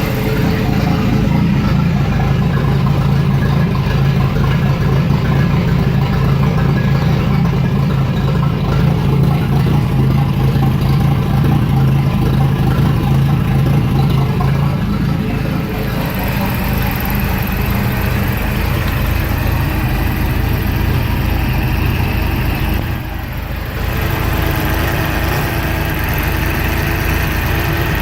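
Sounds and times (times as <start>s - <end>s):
engine running steadily: 0.0s - 28.0s.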